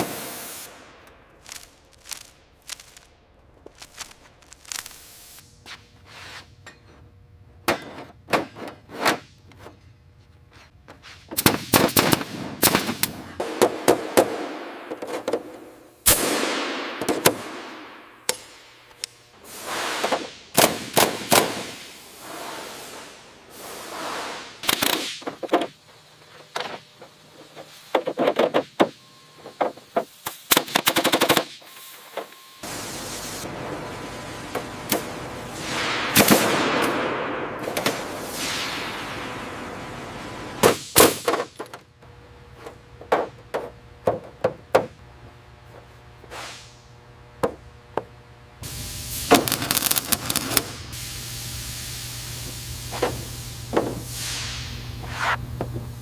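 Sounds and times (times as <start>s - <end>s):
power tool noise: 48.6s - 51.7s.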